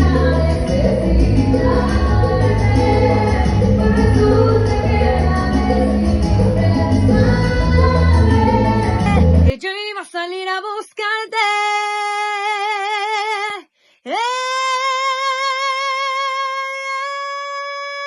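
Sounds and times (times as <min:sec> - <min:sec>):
salsa band music: 0:00.0 - 0:09.5
person singing unaccompanied: 0:00.0 - 0:18.0.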